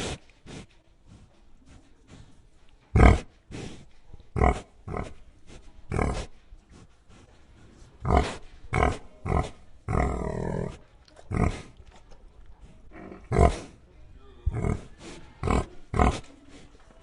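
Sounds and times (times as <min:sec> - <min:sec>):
pig grunting: 0:04.3 - 0:05.2, 0:05.9 - 0:06.3, 0:08.0 - 0:11.8, 0:12.8 - 0:13.8, 0:14.4 - 0:16.3.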